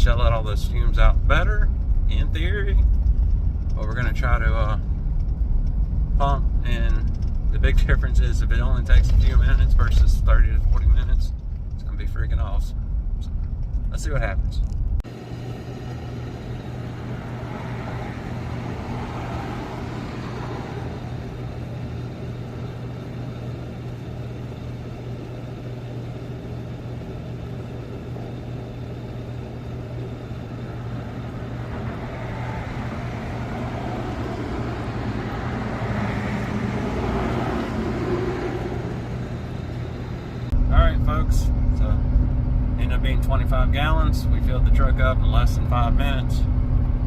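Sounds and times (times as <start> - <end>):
motor vehicle hum: 0.0 - 47.0
rush of passing traffic: 15.0 - 42.8.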